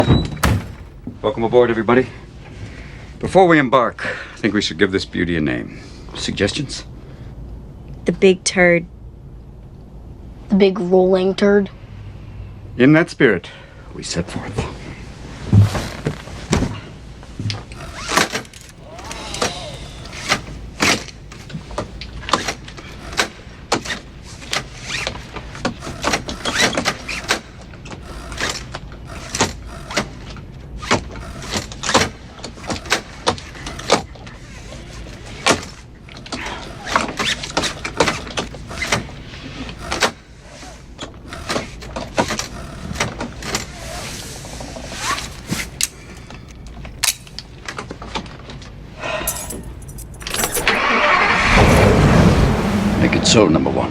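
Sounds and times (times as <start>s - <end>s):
seatbelt squeak: 17.6s - 19.2s, 19.8s - 46.5s, 49.3s - 51.9s
seatbelts buckling clicks: 17.7s - 18.8s, 45.1s - 47.5s, 49.3s - 51.0s.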